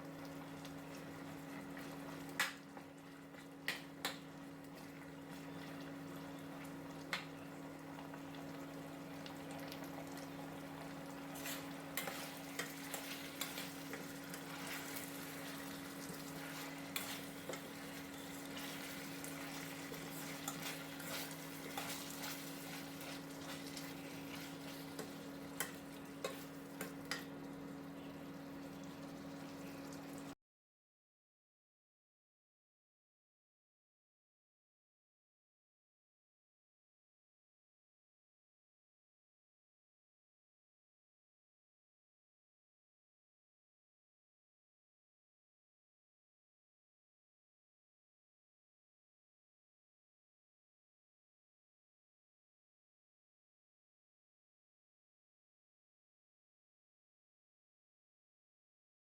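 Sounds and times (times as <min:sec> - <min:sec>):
chicken sizzling in a pan: 0:00.0 - 0:30.4
metal utensil scraping a pan: 0:16.4 - 0:27.3.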